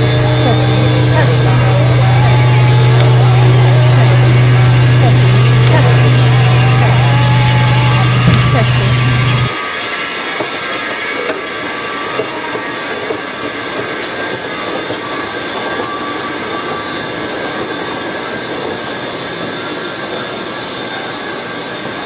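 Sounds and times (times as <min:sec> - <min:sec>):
faint high steady tones: 0:00.0 - 0:09.5
vehicle running noise: 0:00.0 - 0:09.5.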